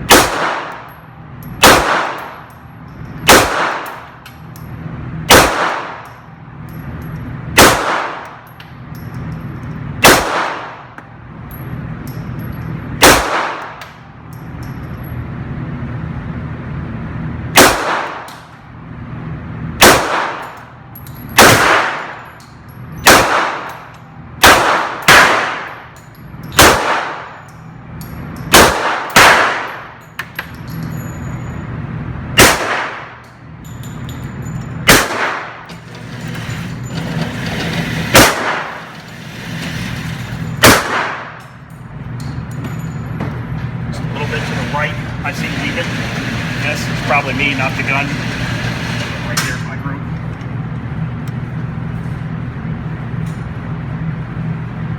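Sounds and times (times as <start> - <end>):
gunshots cracking: 0.0 - 0.9, 1.6 - 2.4, 3.3 - 4.1, 5.3 - 6.0, 7.6 - 8.4, 10.0 - 10.9, 13.0 - 13.8, 17.6 - 18.4, 19.8 - 20.6, 21.4 - 22.2, 23.0 - 23.7, 24.4 - 25.8, 26.6 - 27.4, 28.5 - 29.9, 32.4 - 33.2, 34.9 - 35.7, 38.0 - 38.9, 40.6 - 41.4
steady low hum: 0.0 - 54.9.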